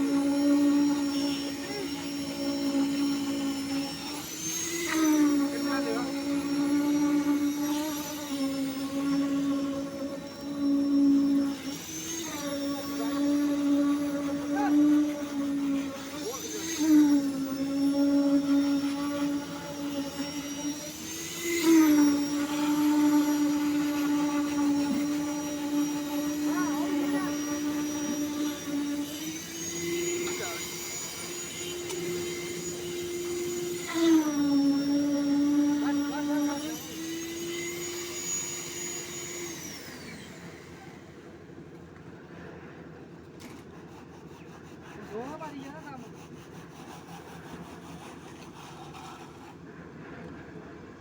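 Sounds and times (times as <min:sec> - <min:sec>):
concrete vibrator humming: 0:00.0 - 0:43.4.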